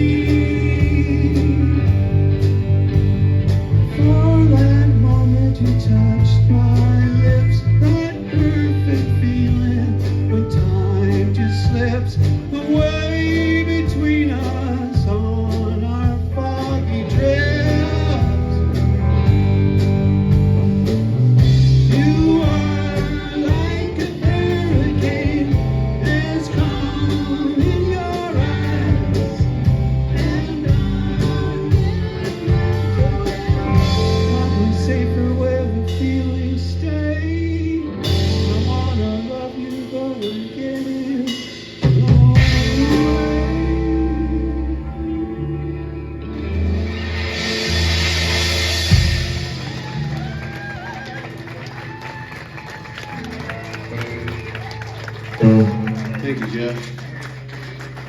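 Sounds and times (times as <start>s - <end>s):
person singing: 0.0s - 2.6s, 3.9s - 19.2s, 21.4s - 47.0s, 55.4s - 56.9s
bass line: 0.0s - 58.0s
guitar: 0.0s - 58.0s.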